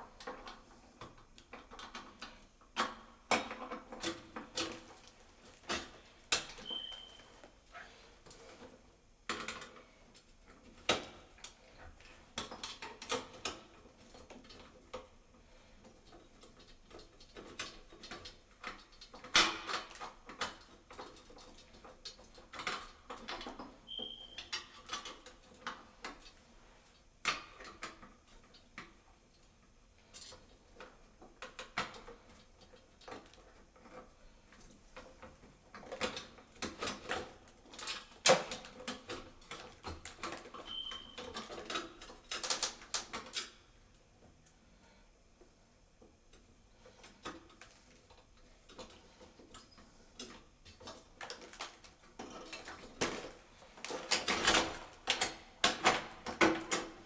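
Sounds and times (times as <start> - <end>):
brief squeak: 6.6 - 7.4, 23.9 - 24.5, 40.6 - 41.2.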